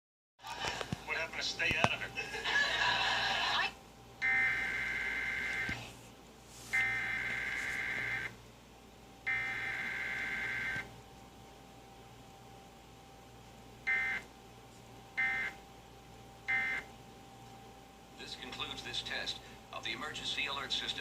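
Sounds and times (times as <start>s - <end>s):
harsh digital data tones: 4.2s - 5.7s.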